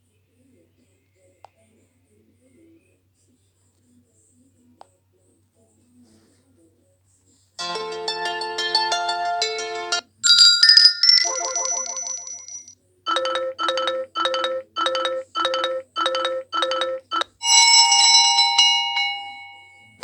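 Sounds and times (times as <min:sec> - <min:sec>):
ringing chime: 0:07.6 - 0:20.0
ringtone melody: 0:07.6 - 0:20.0
rising chime: 0:07.6 - 0:20.0
short beeps: 0:11.2 - 0:17.3.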